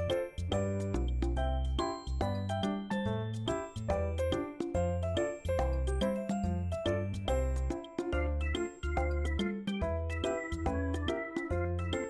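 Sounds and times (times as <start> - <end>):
background music with beat: 3.5 - 12.0.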